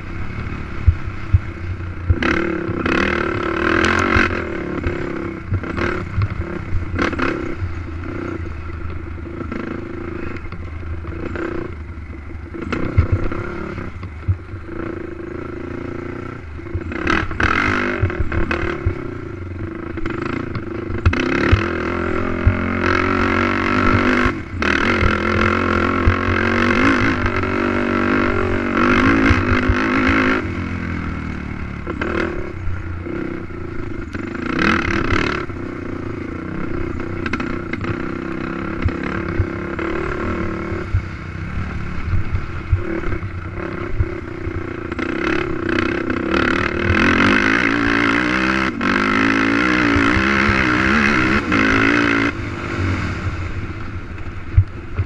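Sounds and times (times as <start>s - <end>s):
atv engine revving: 0.0s - 55.0s.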